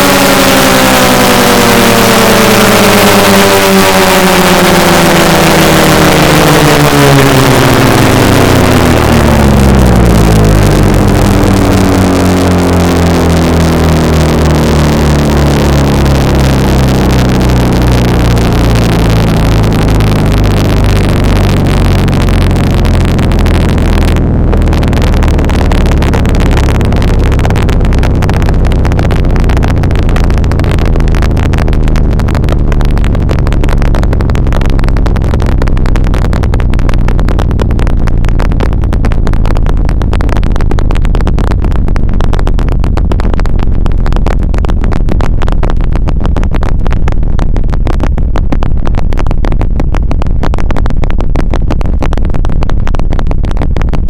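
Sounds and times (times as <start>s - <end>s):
low droning tones: 0.0s - 54.0s.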